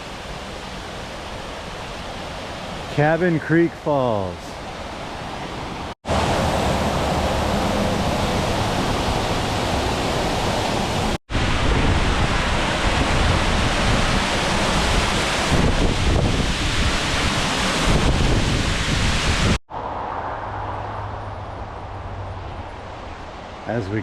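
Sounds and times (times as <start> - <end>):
waterfall rushing: 0.0 - 19.6
wind on microphone: 6.1 - 24.0.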